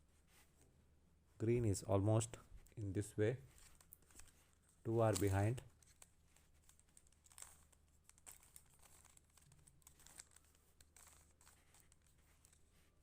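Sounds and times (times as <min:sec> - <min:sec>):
puzzle cube plastic clicks: 0:03.6 - 0:12.6.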